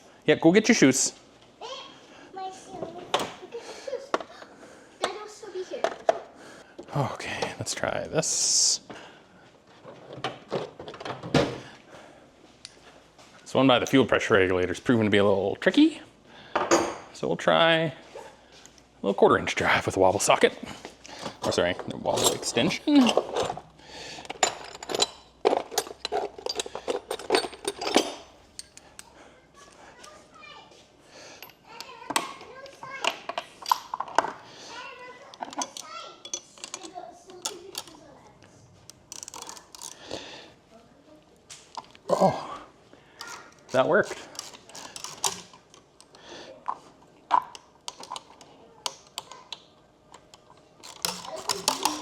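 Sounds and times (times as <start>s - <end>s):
metallic clicks of hand tools: 25.8s - 29.1s, 38.9s - 40.0s, 43.2s - 46.2s, 47.5s - 52.0s
socket wrench ratcheting clicks: 38.9s - 40.0s, 43.2s - 46.2s, 50.2s - 52.0s.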